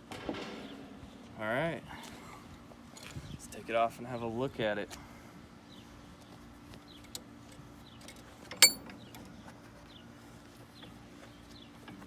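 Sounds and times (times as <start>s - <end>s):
ringing metal clang: 8.6s - 8.9s.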